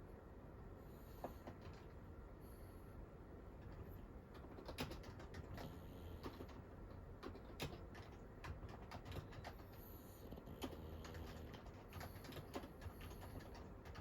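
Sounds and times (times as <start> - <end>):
dog snoring faintly: 9.8 - 13.5.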